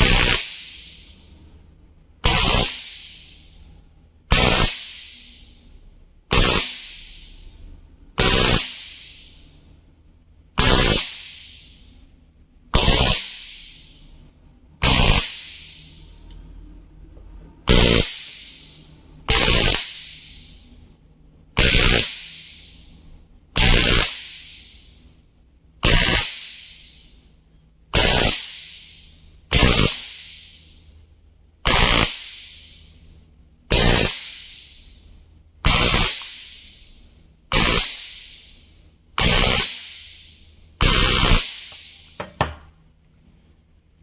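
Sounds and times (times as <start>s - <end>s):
stun gun zapping: 0.0s - 1.2s, 2.2s - 3.6s, 4.3s - 5.6s, 6.3s - 7.4s, 8.2s - 9.5s, 10.6s - 12.0s, 12.8s - 14.0s, 14.8s - 16.1s, 17.7s - 20.7s, 21.6s - 22.9s, 23.6s - 25.0s, 25.8s - 27.2s, 28.0s - 30.8s, 31.7s - 33.1s, 33.7s - 35.0s, 35.6s - 42.2s.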